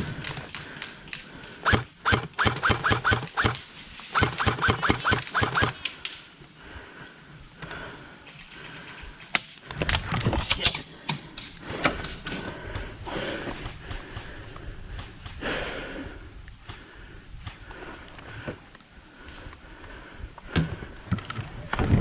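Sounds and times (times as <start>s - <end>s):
airsoft gun shots: 1.6s - 5.8s.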